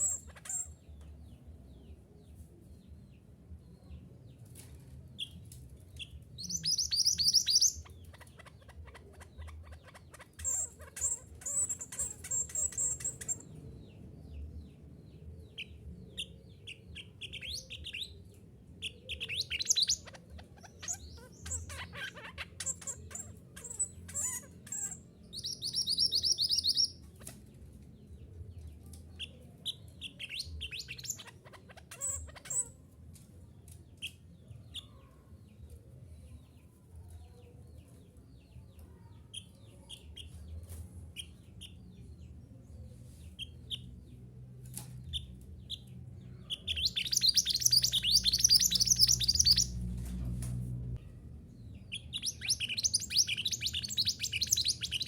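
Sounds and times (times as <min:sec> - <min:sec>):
bird chirping trills: 0:00.0 - 0:01.9, 0:06.0 - 0:27.3, 0:29.2 - 0:32.8, 0:44.8 - 0:50.0, 0:51.0 - 0:55.0.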